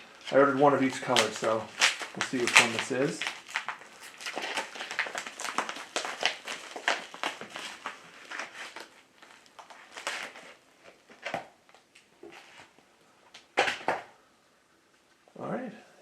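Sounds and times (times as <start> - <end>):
plastic packaging crinkling: 0.0 - 12.8.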